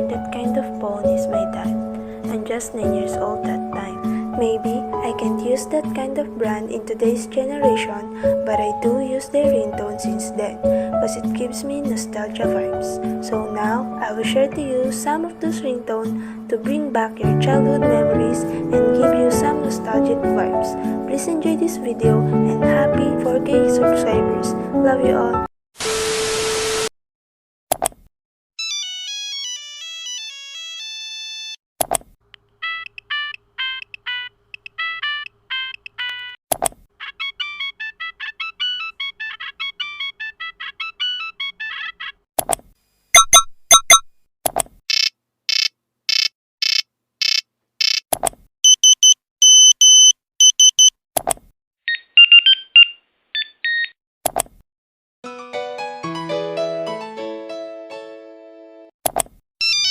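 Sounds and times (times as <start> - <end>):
monophonic ringtone beeps: 43.2 - 44.1, 48.7 - 50.9, 51.9 - 54.0.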